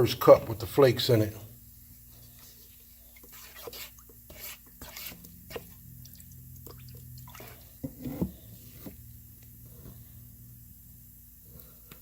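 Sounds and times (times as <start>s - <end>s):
faint steady hum: 0.0s - 12.0s
small clicks and drips: 5.2s - 7.7s.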